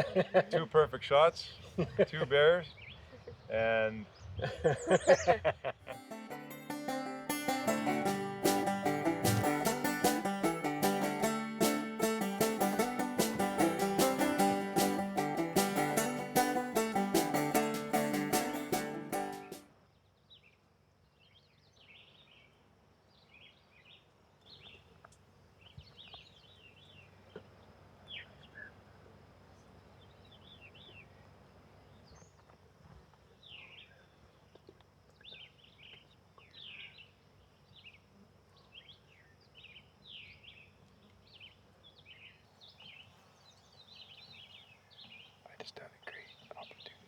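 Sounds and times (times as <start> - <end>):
low background hiss: 0.0 - 47.0
small birds chirping: 1.3 - 5.5, 23.2 - 28.9, 29.5 - 31.3, 33.2 - 47.0.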